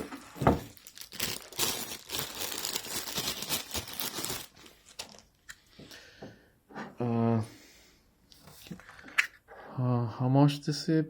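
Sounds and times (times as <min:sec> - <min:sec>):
packaging crinkling: 0:00.0 - 0:05.6.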